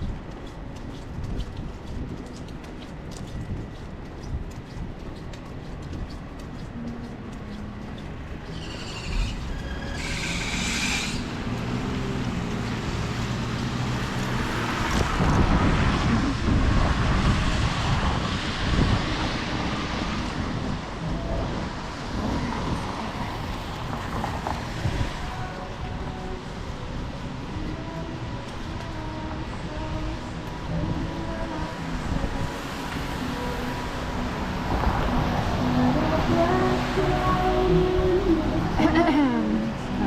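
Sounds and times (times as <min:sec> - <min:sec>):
tyres on wet road: 0:00.0 - 0:40.0
brief high squeal: 0:08.5 - 0:11.4.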